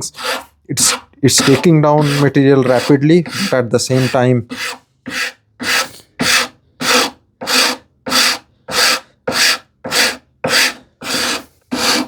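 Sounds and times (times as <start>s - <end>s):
wood rasp filing wood: 0.0s - 12.0s.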